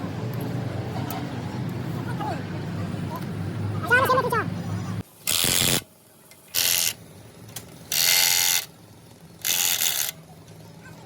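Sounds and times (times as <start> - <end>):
hissing rattling mechanism bursts: 5.0 - 10.7.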